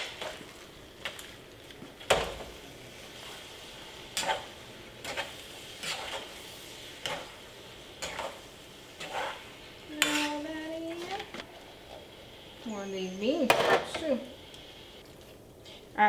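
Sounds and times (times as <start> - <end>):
faint steady sizzle: 0.0 - 16.0
utensil scraping a pan: 4.1 - 7.4, 8.0 - 8.4, 9.0 - 11.2.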